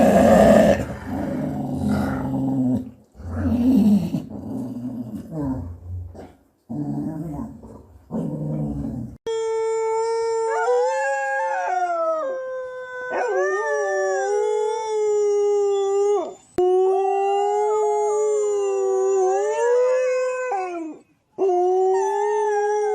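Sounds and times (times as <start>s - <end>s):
dog growling: 0.0s - 9.2s
dog howling: 9.7s - 22.9s.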